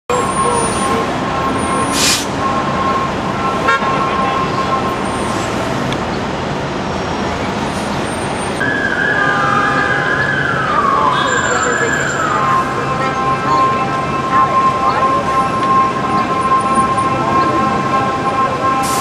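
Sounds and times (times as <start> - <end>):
car horns: 0.1 - 5.7, 11.2 - 19.0
police siren: 0.1 - 5.9, 7.2 - 19.0
street traffic: 0.1 - 19.0
short hiss: 2.0 - 2.3.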